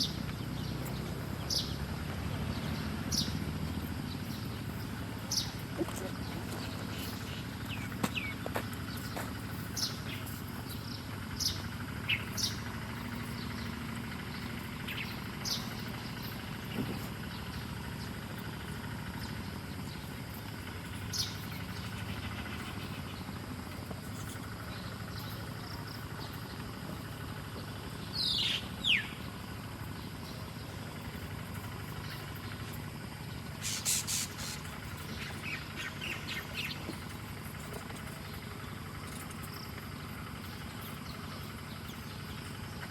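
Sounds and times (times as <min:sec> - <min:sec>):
bird chirping: 0:00.0 - 0:42.9
steady low hum: 0:00.0 - 0:42.9.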